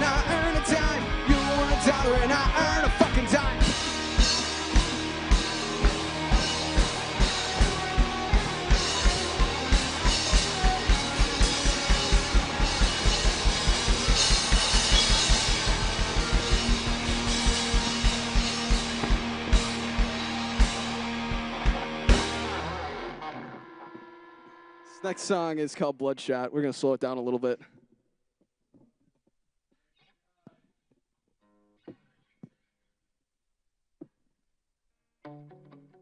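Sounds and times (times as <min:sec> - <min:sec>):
bass drum beat: 0:00.0 - 0:22.7
live rock band playing: 0:00.0 - 0:24.0.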